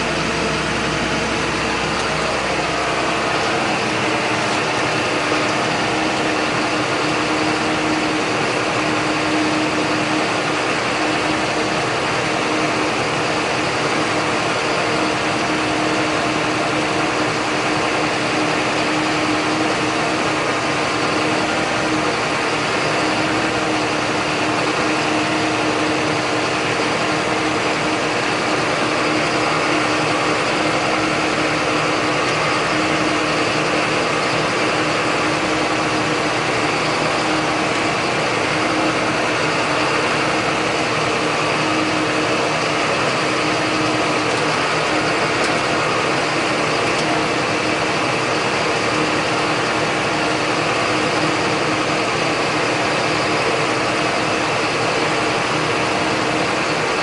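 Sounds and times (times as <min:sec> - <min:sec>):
tractor diesel engine droning: 0:00.0 - 0:57.0.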